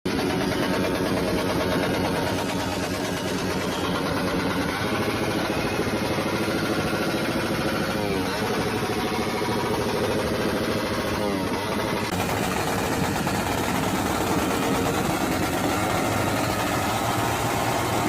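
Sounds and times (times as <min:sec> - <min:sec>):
motorcycle engine idling: 0:00.1 - 0:18.0.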